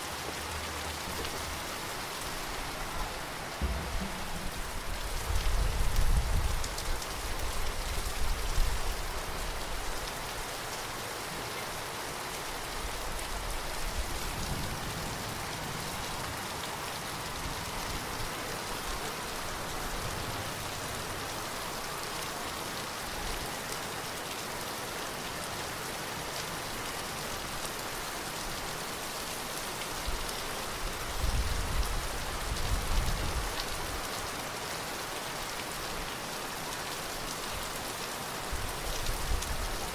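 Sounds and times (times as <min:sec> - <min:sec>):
steady rain falling: 0:00.0 - 0:39.9
low rumbling: 0:03.6 - 0:06.6.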